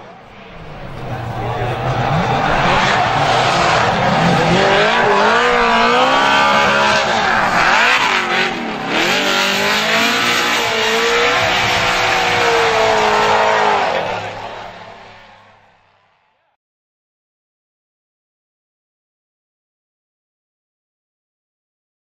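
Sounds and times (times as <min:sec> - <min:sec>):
car engine revving: 0:00.0 - 0:16.0.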